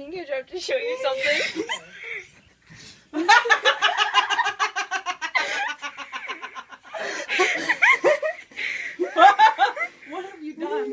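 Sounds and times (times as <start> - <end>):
people laughing hard: 3.2 - 10.0.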